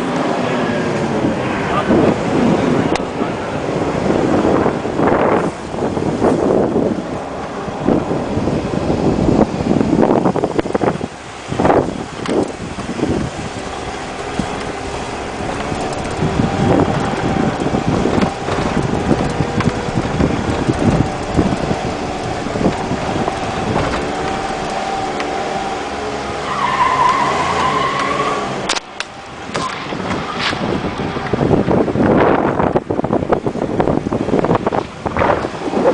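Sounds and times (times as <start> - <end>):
high whine: 0.0 - 32.9
car engine under load: 0.0 - 35.9
knocks and thumps: 13.3 - 25.3.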